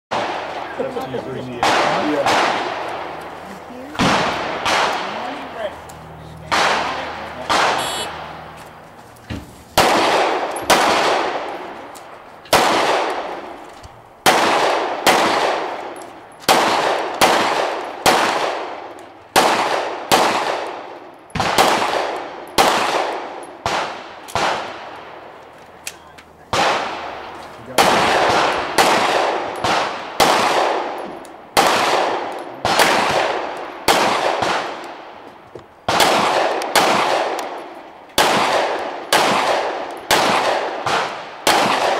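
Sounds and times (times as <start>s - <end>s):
pistol shots echoing: 0.1s - 3.2s, 3.8s - 5.7s, 6.4s - 8.5s, 9.8s - 13.6s, 14.2s - 25.4s, 26.5s - 41.9s.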